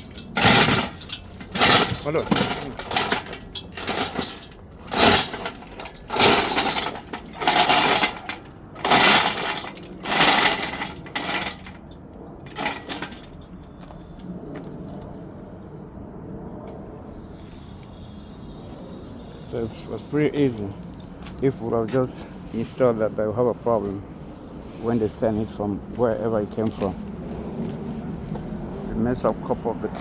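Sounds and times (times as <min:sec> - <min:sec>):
short loud rattling bursts: 0:00.0 - 0:13.4.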